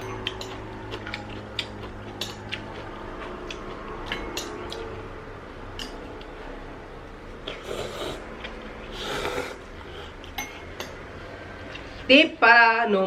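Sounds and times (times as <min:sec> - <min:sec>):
utensils clinking against a bowl: 0:00.0 - 0:05.0, 0:10.2 - 0:12.0
low steady hum: 0:00.0 - 0:13.0.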